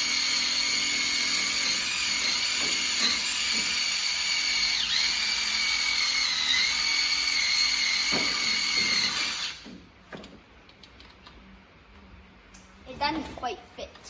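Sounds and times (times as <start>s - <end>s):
grinder whining on steel: 0.0s - 9.6s.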